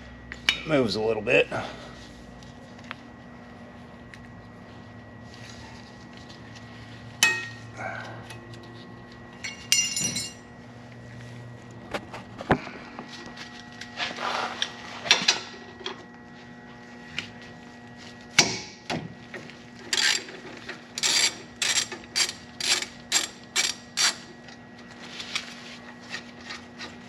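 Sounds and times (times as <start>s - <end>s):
metal knocks and clinks: 9.4s - 10.4s.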